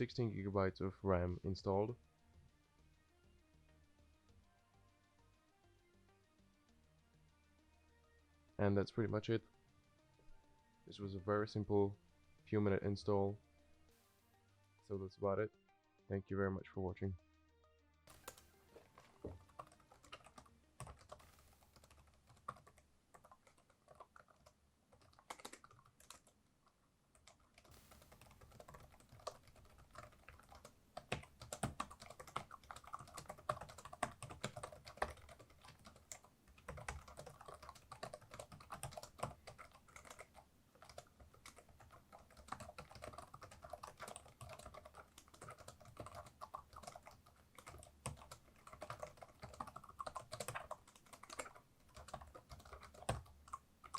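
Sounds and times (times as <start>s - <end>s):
typing on laptop keyboard: 18.1s - 26.4s, 27.1s - 53.9s.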